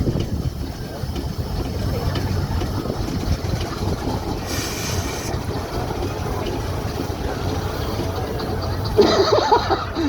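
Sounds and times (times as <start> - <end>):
wind buffeting microphone: 0.0 - 9.0
brief hiss: 4.4 - 5.4.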